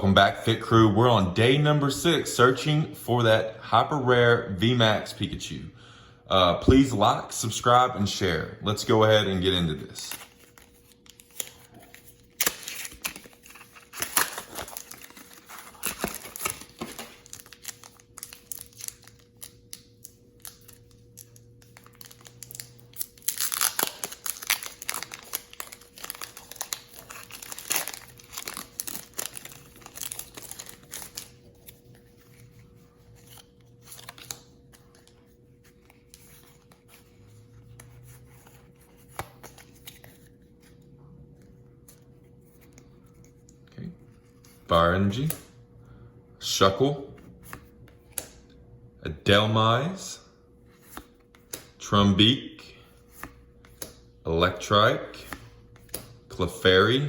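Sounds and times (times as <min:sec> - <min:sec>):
cards rustling and clicking: 0:09.9 - 0:45.4, 0:53.0 - 0:54.0, 0:55.2 - 0:56.2
foil wrapper tearing and crinkling: 0:12.3 - 0:31.7.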